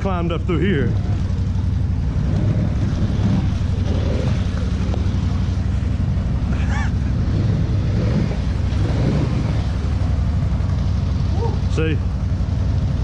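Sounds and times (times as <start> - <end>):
atv engine running: 0.0 - 13.0.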